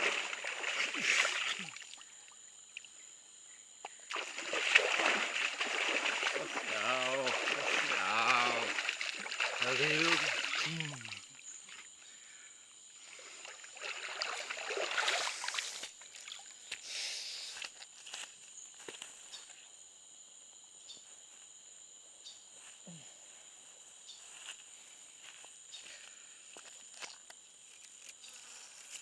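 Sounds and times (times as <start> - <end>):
short low falling call: 6.4 - 8.9.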